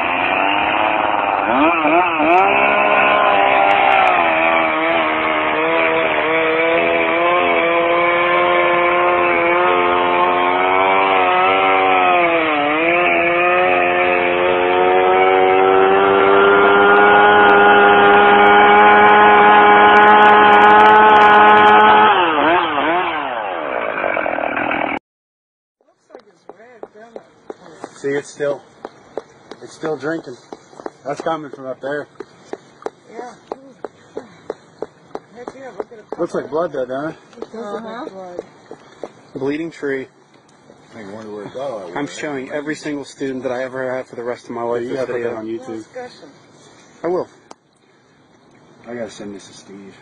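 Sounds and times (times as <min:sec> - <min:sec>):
chainsaw cutting log: 0:00.0 - 0:25.0, 0:26.1 - 0:39.2.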